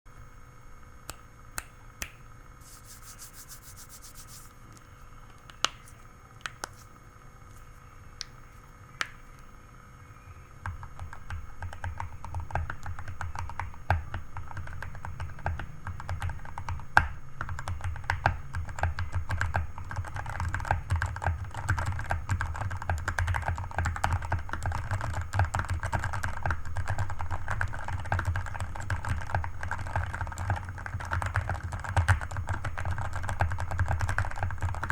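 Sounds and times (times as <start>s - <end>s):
mechanical keyboard typing: 10.6s - 34.9s.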